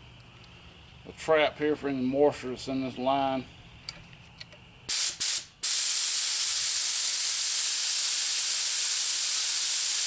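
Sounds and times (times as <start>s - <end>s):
compressed air hissing from spray gun: 4.9s - 10.0s.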